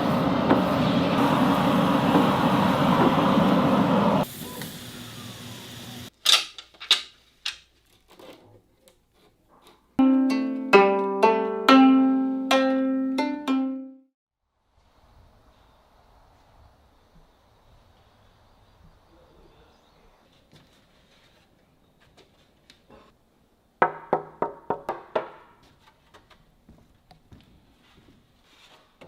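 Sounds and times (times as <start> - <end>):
plucked zither notes: 10.0 - 14.0.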